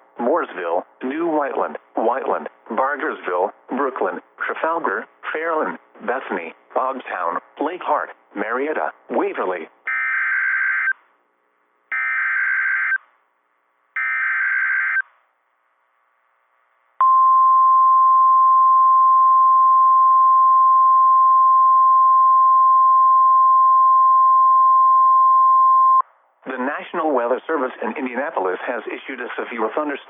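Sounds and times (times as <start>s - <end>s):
steady alarm tone: 9.9s - 11.0s, 11.9s - 13.0s, 14.0s - 15.0s.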